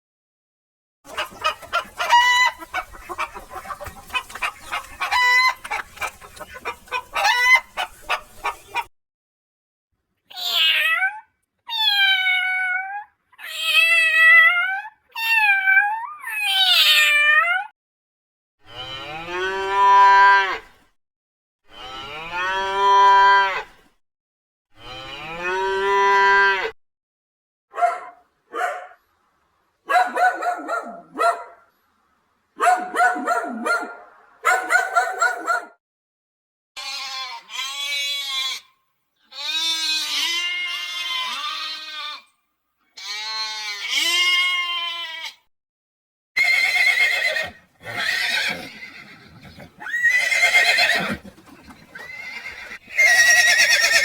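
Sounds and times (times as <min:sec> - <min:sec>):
high sliding animal calls: 0:01.1 - 0:08.9, 0:46.7 - 0:54.0
rapid chattering animal cries: 0:46.4 - 0:54.0
long low animal calls: 0:47.2 - 0:54.0.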